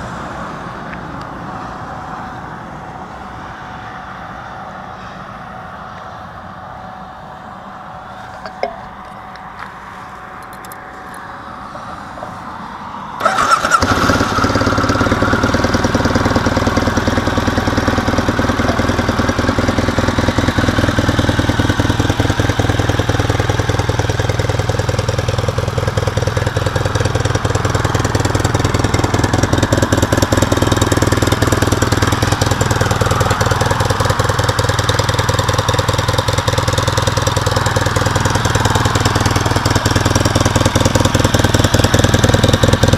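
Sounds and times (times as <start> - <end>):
motorcycle engine starting and idling: 13.2 - 42.9.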